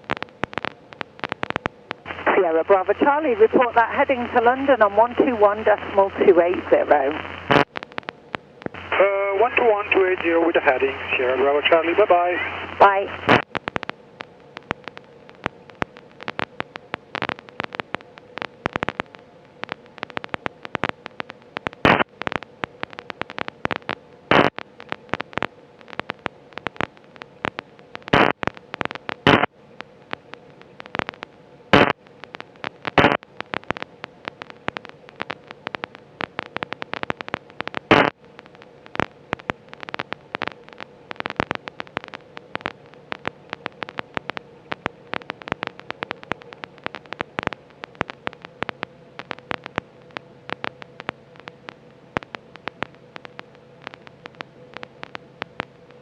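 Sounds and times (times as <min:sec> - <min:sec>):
radio crackling clicks and pops: 0:00.0 - 0:56.0
steady hum: 0:00.0 - 0:56.0.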